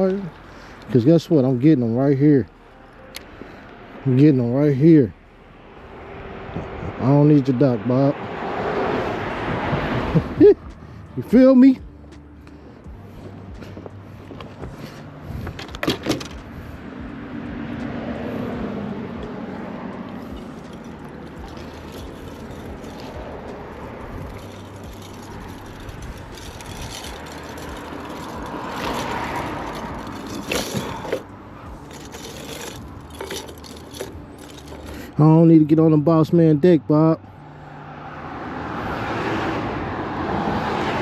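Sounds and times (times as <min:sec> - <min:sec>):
outdoor rushing noise: 0:03.2 - 0:35.5.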